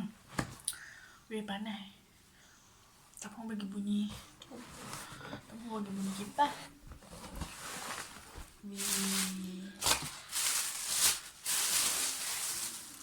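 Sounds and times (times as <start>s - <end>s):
shoe packaging rustling: 6.9s - 13.0s.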